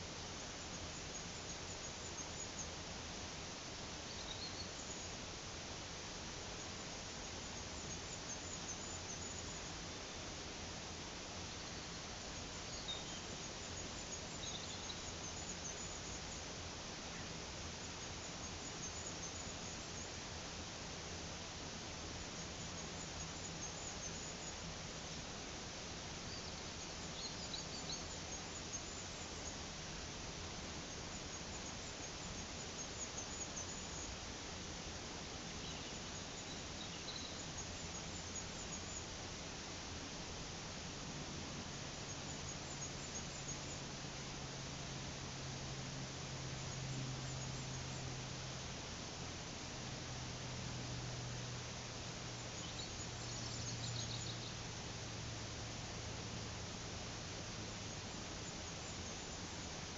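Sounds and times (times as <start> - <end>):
faint bird chirps: 0.0 - 2.9, 3.5 - 5.6, 6.4 - 10.4, 11.3 - 20.4, 21.3 - 34.2, 34.8 - 40.0, 41.6 - 48.6, 52.0 - 55.2, 57.4 - 59.9
faint high bird chirps: 4.0 - 5.2, 6.6 - 10.2, 11.5 - 16.5, 26.2 - 29.8, 35.3 - 39.2, 52.4 - 54.7.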